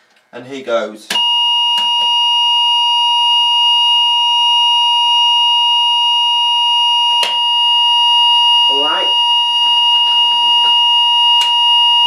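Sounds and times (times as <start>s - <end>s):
fire alarm continuous tone: 1.1s - 12.0s.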